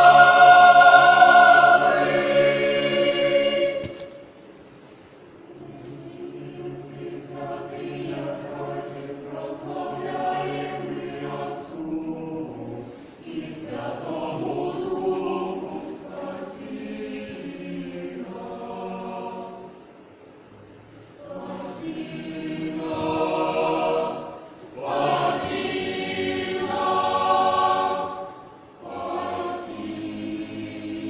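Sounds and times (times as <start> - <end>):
choir singing in harmony: 0.0 - 4.3, 5.5 - 20.1, 21.2 - 31.0.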